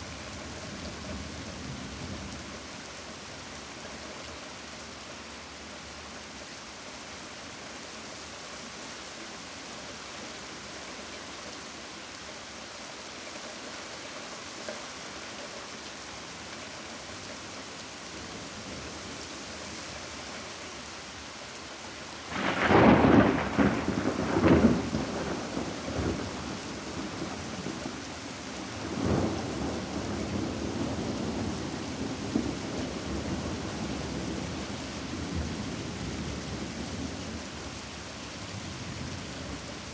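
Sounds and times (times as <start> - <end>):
rain hissing: 21.8 - 33.2
thunder clap and rumbles: 22.4 - 27.6.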